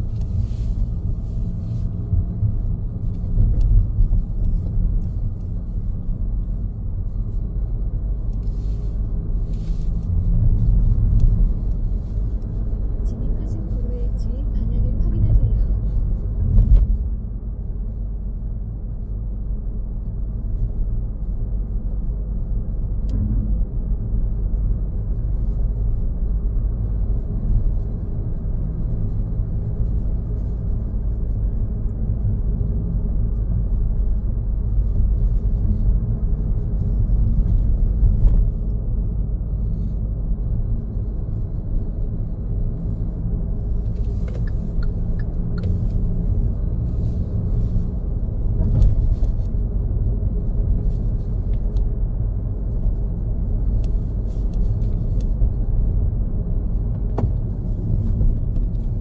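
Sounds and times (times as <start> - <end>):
car engine and tyre rumble: 0.0 - 59.0.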